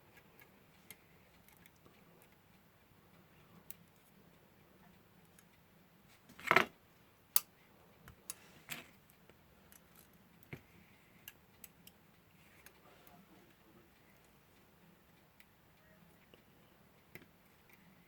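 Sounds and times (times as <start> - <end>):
tweezers and clock parts clicking: 0.1 - 2.6, 11.2 - 12.8.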